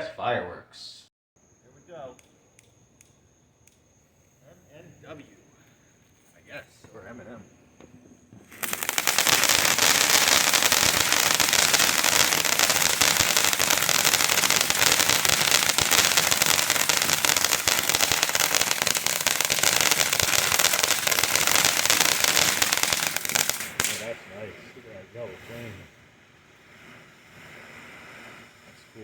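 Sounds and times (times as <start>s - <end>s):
fountain firework hissing: 8.3s - 29.0s
rapid crackling: 8.5s - 25.8s.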